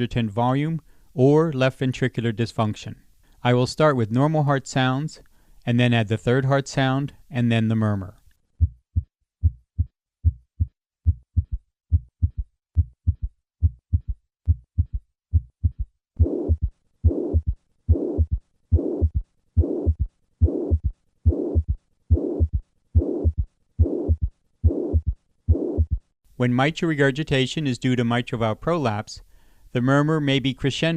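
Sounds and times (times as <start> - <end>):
blowing heart murmur: 8.6 - 26.0
heart sounds: 8.6 - 26.1.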